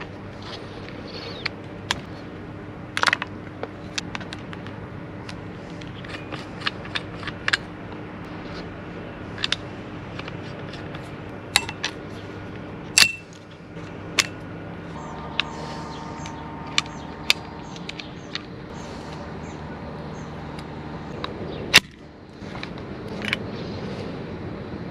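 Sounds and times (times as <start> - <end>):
steady low hum: 0.0 - 24.9
sharp clicks of rifle parts handled: 9.4 - 11.0.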